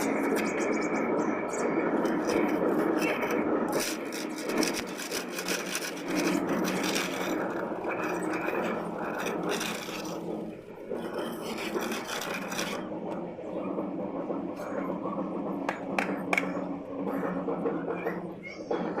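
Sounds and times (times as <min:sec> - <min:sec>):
plastering tool scraping plaster: 0:01.9 - 0:13.2.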